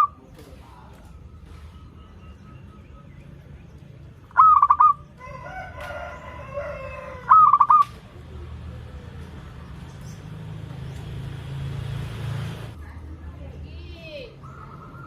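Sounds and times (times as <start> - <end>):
zebra dove cooing: 0.0 - 0.3, 4.3 - 5.1, 6.5 - 8.2
rooster crowing: 5.2 - 7.8.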